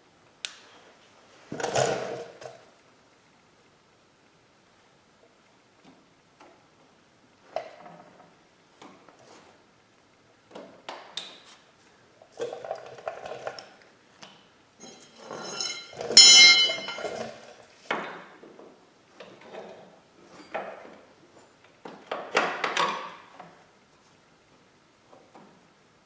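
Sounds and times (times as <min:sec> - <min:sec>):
pliers and metal ring clinking: 0:14.8 - 0:17.2
loud ringing metallic ping: 0:15.6 - 0:17.1.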